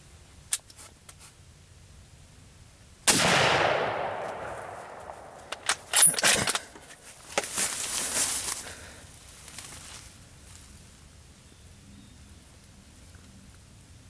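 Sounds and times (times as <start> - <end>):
rifle shot: 3.0 - 6.7
rustling: 4.2 - 11.0
sharp clicks and knocks: 5.4 - 7.5.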